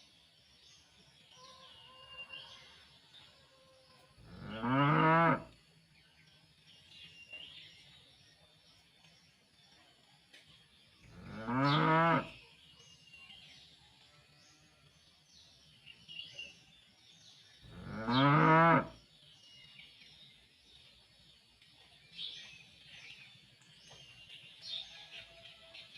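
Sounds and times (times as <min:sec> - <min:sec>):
cattle mooing: 0:04.2 - 0:05.5, 0:17.7 - 0:18.9.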